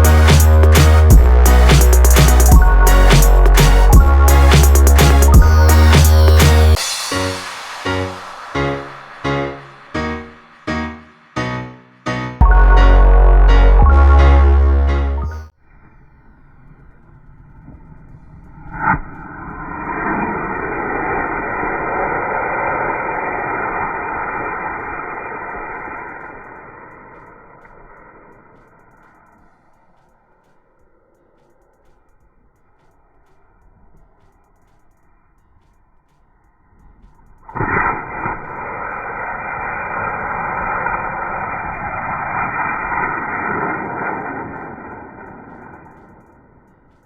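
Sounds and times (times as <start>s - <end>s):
fountain firework hissing: 5.5s - 11.3s, 19.2s - 29.9s, 37.5s - 46.2s.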